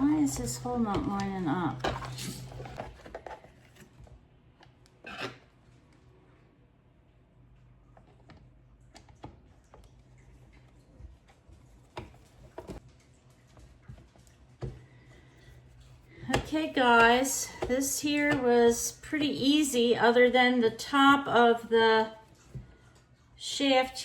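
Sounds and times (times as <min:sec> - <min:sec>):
rubbing and scuffing of parts: 0:01.8 - 0:04.1.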